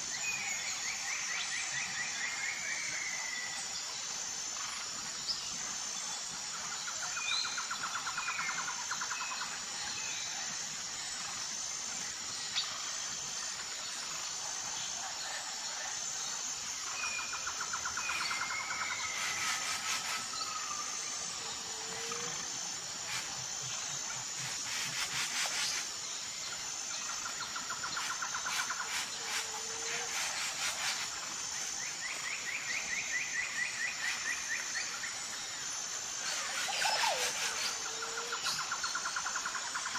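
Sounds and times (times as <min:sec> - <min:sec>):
pulsing insect chorus: 0:00.0 - 0:39.9
birds trilling and chirping: 0:36.2 - 0:39.5.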